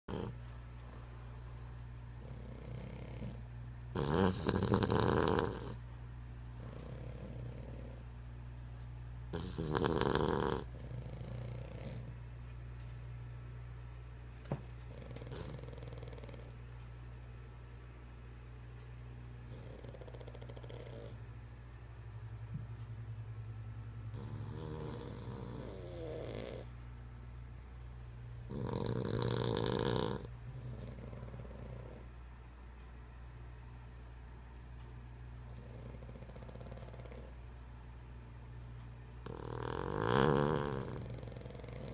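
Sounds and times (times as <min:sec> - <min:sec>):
soft dog breaths: 0:00.1 - 0:03.6, 0:14.6 - 0:17.4, 0:27.8 - 0:32.1
dog snoring: 0:00.1 - 0:08.1, 0:09.3 - 0:12.6, 0:14.8 - 0:17.0, 0:19.4 - 0:21.2, 0:24.1 - 0:26.8, 0:28.4 - 0:32.1, 0:35.4 - 0:37.4, 0:39.2 - 0:41.9.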